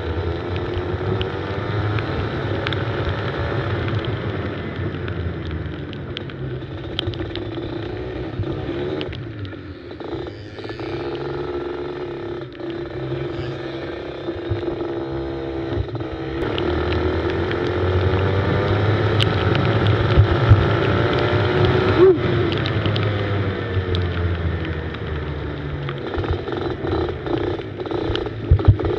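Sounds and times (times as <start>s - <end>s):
sharp clicks: 1.9s - 14.8s, 15.7s - 28.9s
go-kart engine revving: 6.5s - 28.9s.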